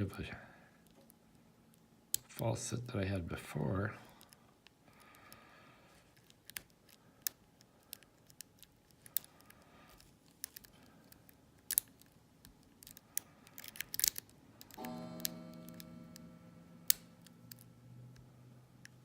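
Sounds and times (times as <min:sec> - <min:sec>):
lock pick clicking and scraping: 0:06.1 - 0:15.8.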